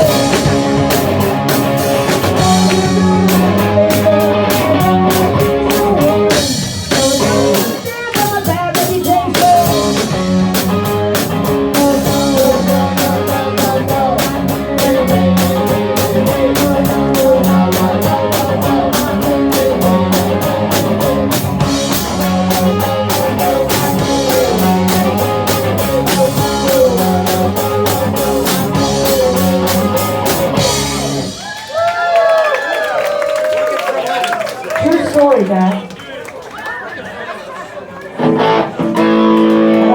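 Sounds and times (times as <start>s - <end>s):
live rock band playing: 0.0s - 32.0s, 38.2s - 39.9s.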